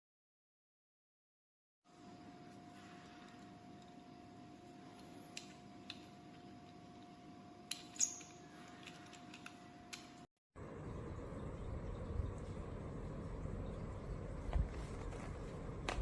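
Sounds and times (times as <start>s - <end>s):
steady hum: 9.6s - 16.0s.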